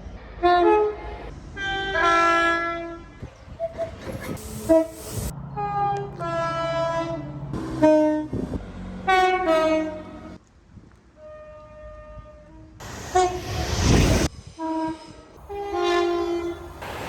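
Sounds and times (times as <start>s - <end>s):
train air horn blasts: 4.4s - 10.4s, 11.2s - 16.9s
low rumble: 12.8s - 15.5s.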